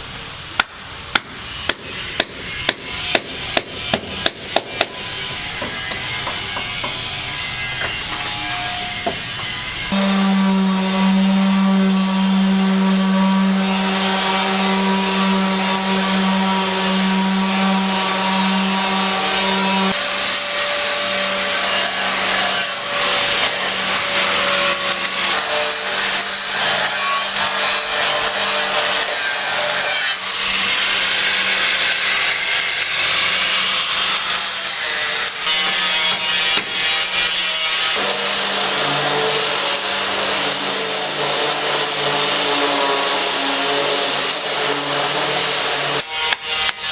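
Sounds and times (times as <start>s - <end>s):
power tool cutting: 1.5s - 46.9s.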